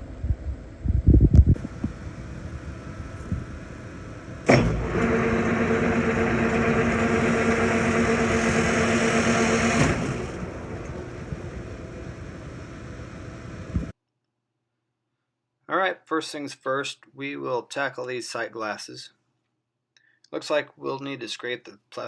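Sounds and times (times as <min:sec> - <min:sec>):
gear whine: 0:00.0 - 0:13.9
milling machine running: 0:01.6 - 0:13.9
rattle: 0:01.6 - 0:13.9.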